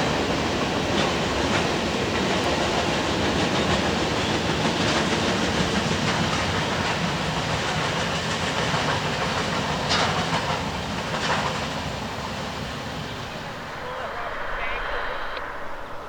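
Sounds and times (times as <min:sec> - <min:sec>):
train wheels clattering over rail joints: 0:05.7 - 0:11.8.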